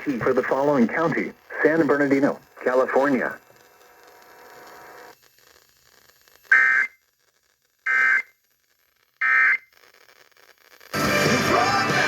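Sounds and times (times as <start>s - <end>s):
buzzy digital tone bursts: 0.0s - 7.0s.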